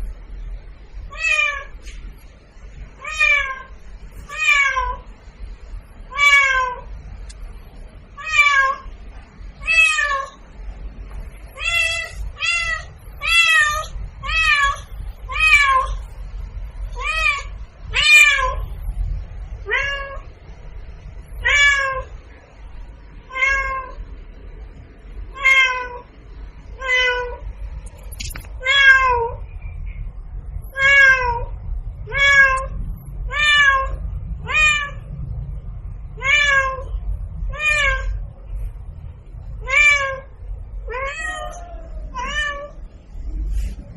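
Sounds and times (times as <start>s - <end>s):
low hum: 0.0s - 43.9s
cat meowing: 1.1s - 1.8s, 3.0s - 5.1s, 6.1s - 6.9s, 8.2s - 8.9s, 9.6s - 10.4s, 11.6s - 16.0s, 16.9s - 18.7s, 19.6s - 20.3s, 21.4s - 22.1s, 23.3s - 24.0s, 25.3s - 26.1s, 26.8s - 27.5s, 28.6s - 29.4s, 30.7s - 31.5s, 32.1s - 35.0s, 36.2s - 38.2s, 39.6s - 42.8s.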